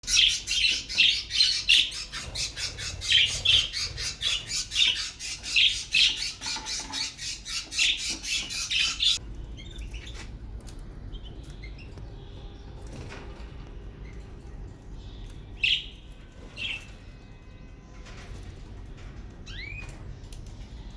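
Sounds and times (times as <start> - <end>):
budgies chattering: 0.1 - 10.3.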